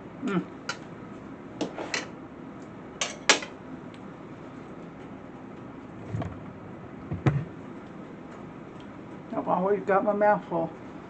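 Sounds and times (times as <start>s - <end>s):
soft low thump: 6.0s - 6.4s, 7.0s - 7.5s.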